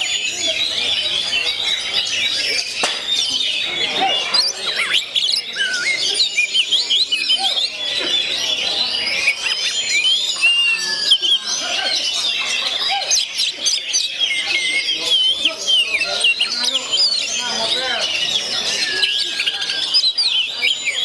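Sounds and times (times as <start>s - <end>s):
bird singing whistles and chirps: 0.0s - 21.0s.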